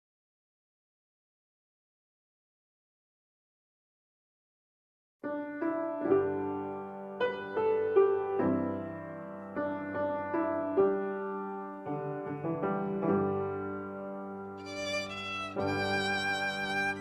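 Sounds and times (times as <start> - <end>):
piano playing slow hymn: 5.2 - 17.0
violin: 14.6 - 17.0.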